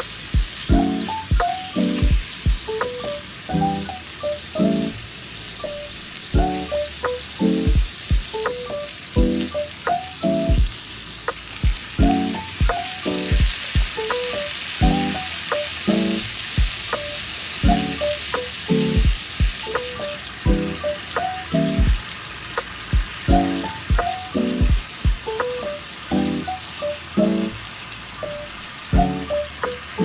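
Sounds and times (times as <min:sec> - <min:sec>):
background music with low beat: 0:00.0 - 0:03.8, 0:06.4 - 0:08.6, 0:09.2 - 0:10.8, 0:11.4 - 0:14.2, 0:14.8 - 0:15.2, 0:16.1 - 0:19.9, 0:20.5 - 0:22.0, 0:22.6 - 0:26.5, 0:28.9 - 0:30.0
meat frying hiss: 0:00.0 - 0:30.0.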